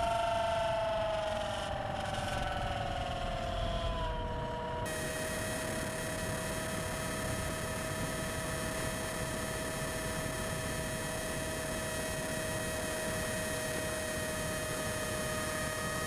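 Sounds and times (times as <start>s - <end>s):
electric motor whine: 4.9s - 16.0s.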